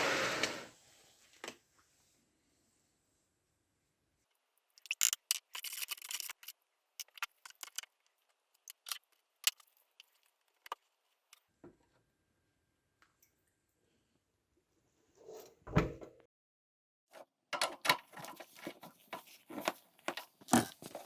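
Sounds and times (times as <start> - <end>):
small hard objects clicking and rattling: 4.7 - 10.8.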